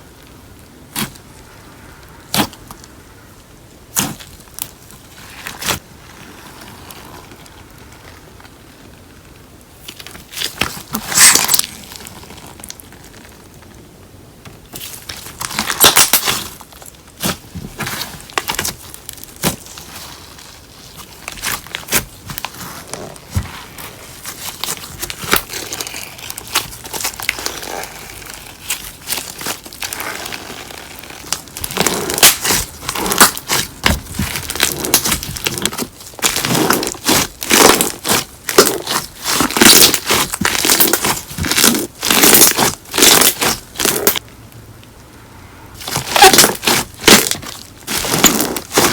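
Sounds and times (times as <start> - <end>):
slime crackling when squeezed: 9.9 - 13.6, 14.7 - 44.2, 45.8 - 48.9.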